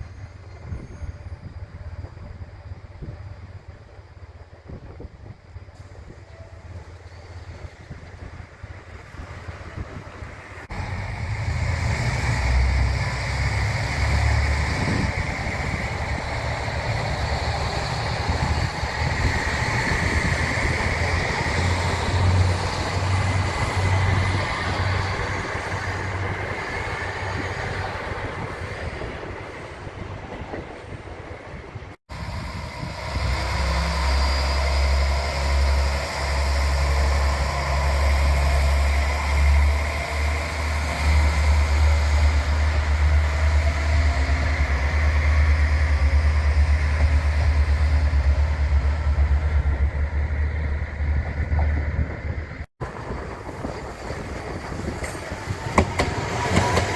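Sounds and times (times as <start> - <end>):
rail vehicle wheels rumbling: 0.0 - 56.9.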